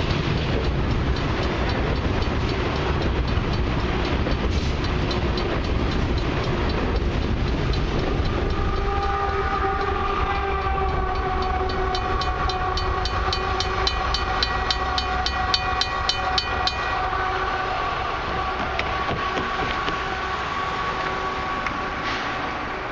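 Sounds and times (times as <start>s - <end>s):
freight train rumbling past: 0.0s - 22.9s
train wheels clacking on rail joints: 0.0s - 22.9s.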